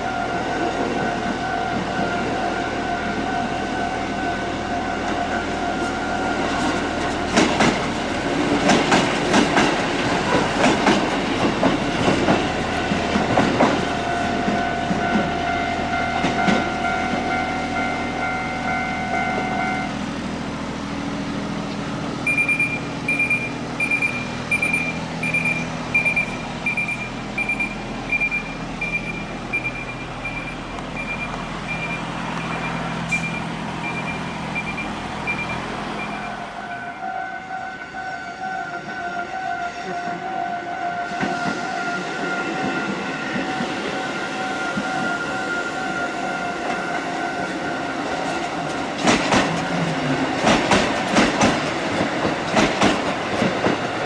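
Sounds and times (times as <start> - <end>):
electric train running by: 0.0 - 54.0
high-pitched beeps: 22.3 - 36.4.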